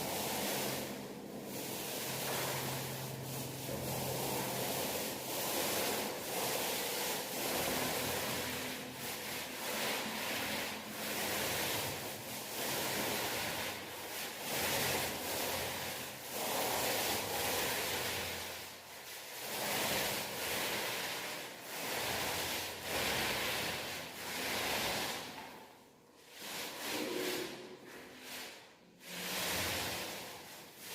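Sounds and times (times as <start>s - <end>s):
paint roller rasping on wall: 0.0s - 30.9s.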